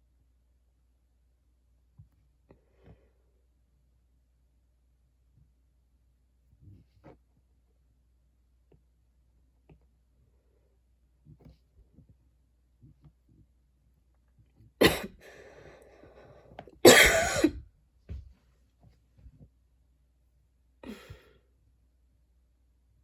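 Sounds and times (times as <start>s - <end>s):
woman coughing: 14.8s - 15.3s, 16.8s - 17.6s.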